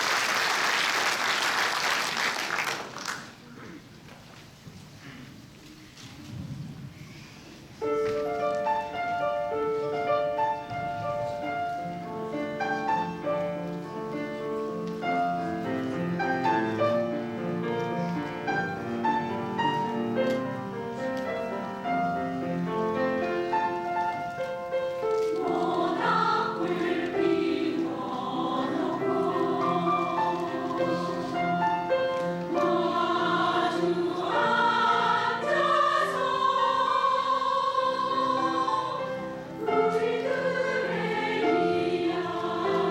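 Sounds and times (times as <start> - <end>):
piano playing: 7.8 - 42.9
women's choir singing with vibrato: 25.1 - 42.9.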